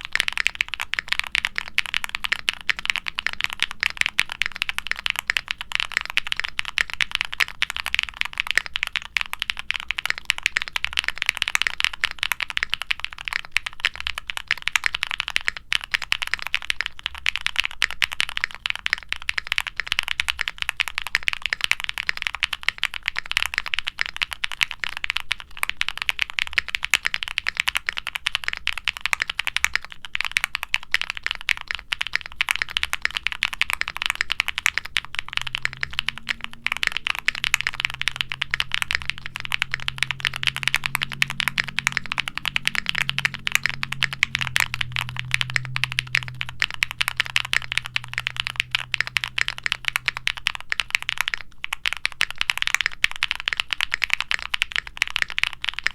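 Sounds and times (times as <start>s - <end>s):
fast mechanical keyboard typing: 0.0s - 55.9s.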